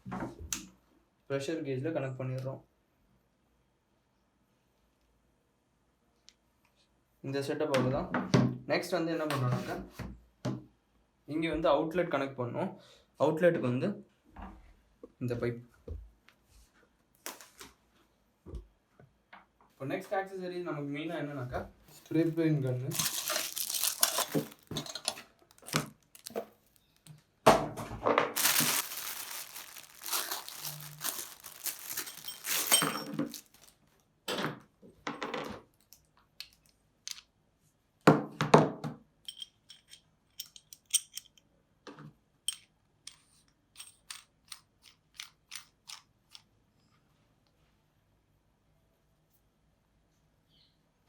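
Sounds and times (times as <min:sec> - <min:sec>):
packaging crinkling and tearing: 0:22.9 - 0:27.0, 0:28.4 - 0:33.8.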